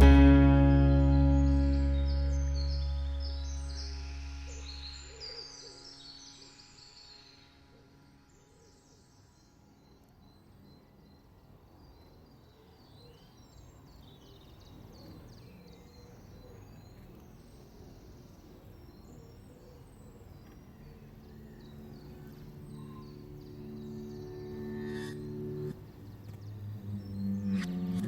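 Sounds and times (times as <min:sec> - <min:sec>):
background music: 0:00.0 - 0:05.8
birds chirping: 0:00.0 - 0:07.2.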